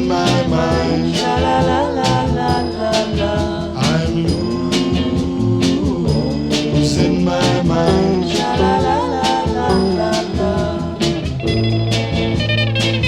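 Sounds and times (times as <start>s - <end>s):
band instrumental recording: 0.0s - 13.0s
drum beat: 0.0s - 13.0s.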